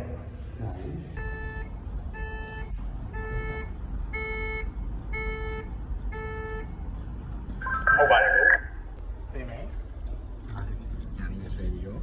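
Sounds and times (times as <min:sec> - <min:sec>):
steady low hum: 0:00.0 - 0:12.0
fire alarm buzzing beep: 0:01.2 - 0:06.7.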